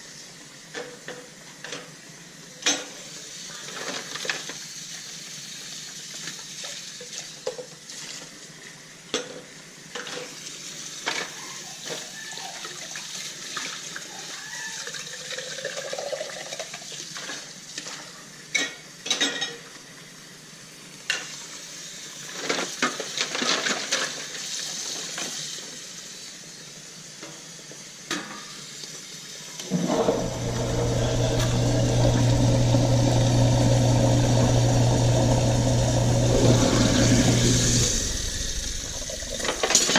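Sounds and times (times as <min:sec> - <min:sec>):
running tap water: 0:12.4 - 0:17.5, 0:29.6 - 0:39.9
dishes and cutlery clinking: 0:18.6 - 0:19.7
electric motor hum: 0:29.7 - 0:39.8.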